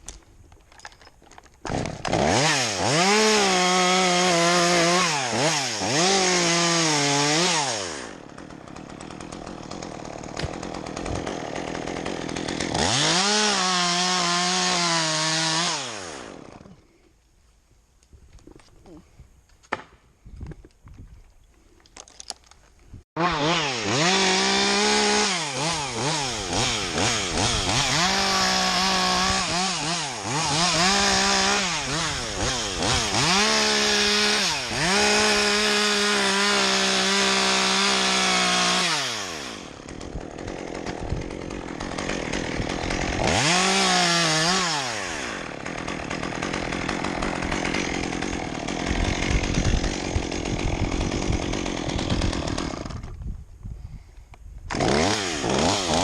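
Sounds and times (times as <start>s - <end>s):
chainsaw cutting wood: 1.4s - 17.0s, 23.2s - 53.3s, 54.6s - 56.0s.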